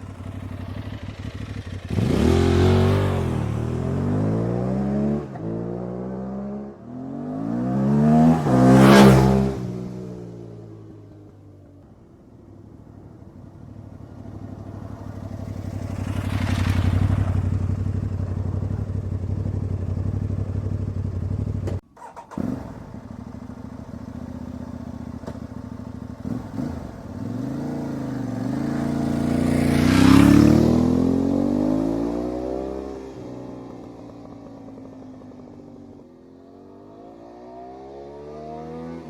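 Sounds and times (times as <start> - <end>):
motorcycle engine revving past: 0.0 - 11.1, 14.1 - 20.4, 26.2 - 39.0.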